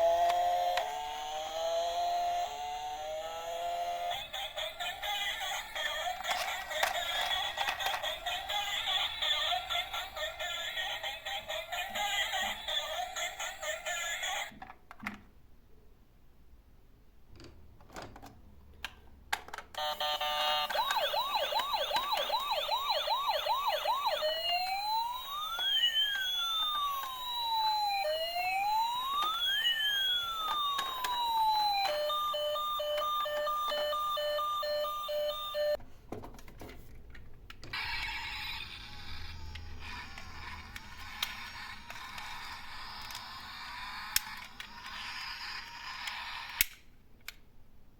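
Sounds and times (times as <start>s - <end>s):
electronic siren: 0.0s - 4.3s, 19.8s - 35.8s.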